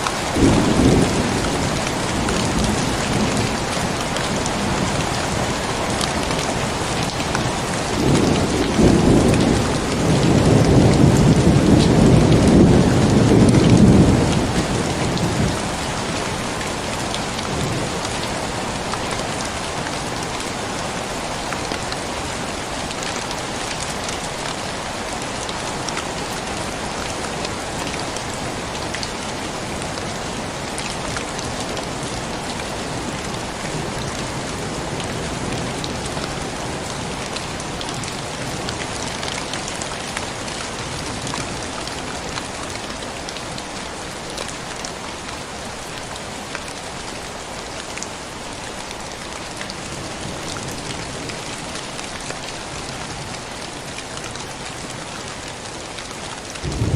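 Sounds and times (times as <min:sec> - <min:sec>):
steady rain falling: 0:00.0 - 0:56.9
thunder rumbling: 0:00.3 - 0:03.8, 0:56.6 - 0:56.9.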